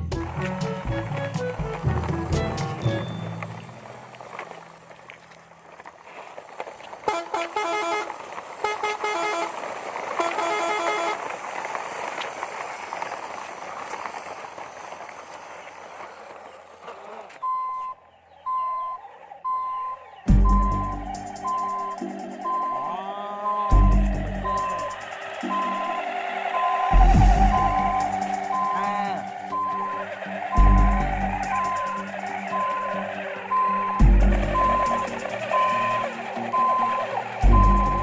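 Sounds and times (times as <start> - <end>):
engine running: 0.0 - 6.0, 6.7 - 17.4, 20.3 - 22.8, 23.7 - 38.0
vehicle horn blasts: 7.1 - 9.6, 10.2 - 11.2
short high beeps: 27.4 - 30.0, 33.6 - 38.0.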